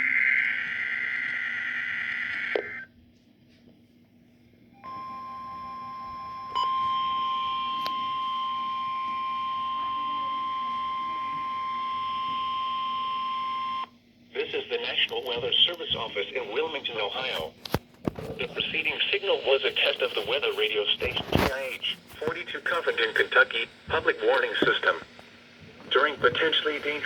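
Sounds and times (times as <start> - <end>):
harsh data screech: 0.0 - 2.9
long steady alarm tone: 0.0 - 2.9, 4.8 - 14.0.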